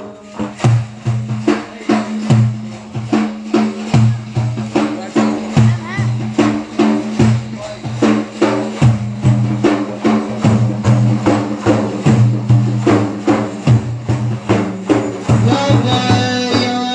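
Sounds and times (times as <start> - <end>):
steady percussion beat: 0.0 - 16.9.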